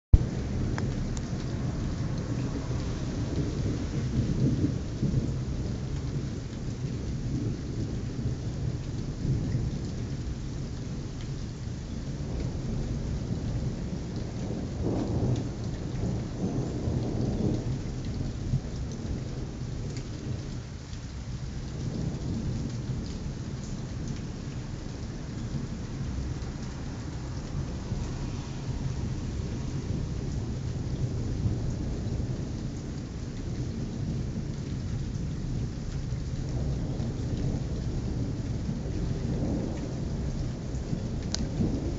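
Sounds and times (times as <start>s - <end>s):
low rolling thunder: 0.1s - 41.9s
steady rain: 0.1s - 41.9s.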